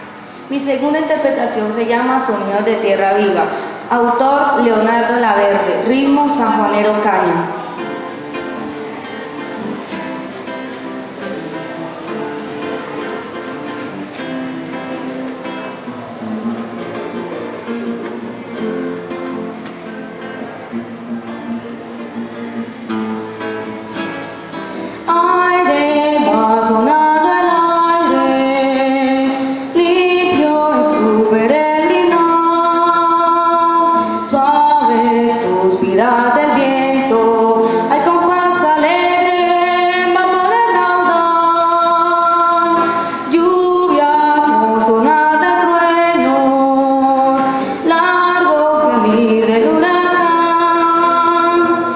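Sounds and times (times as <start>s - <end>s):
guitar accompaniment: 0.0s - 51.9s
person singing: 24.0s - 51.9s.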